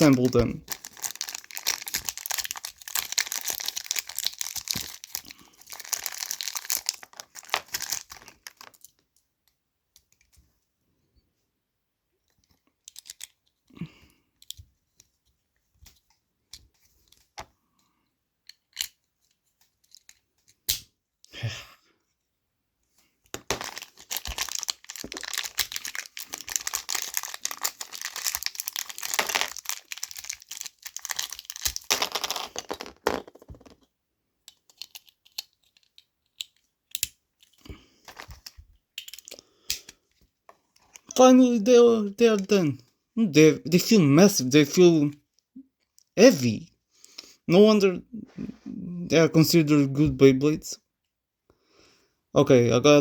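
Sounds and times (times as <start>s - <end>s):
plastic packaging crinkling: 0.0s - 8.9s, 23.4s - 33.7s
plastic parts clicking: 12.3s - 13.6s, 34.4s - 40.0s.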